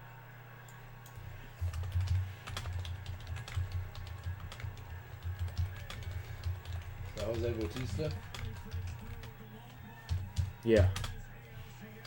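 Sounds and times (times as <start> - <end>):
keyboard keystrokes clicking: 1.0 - 9.3.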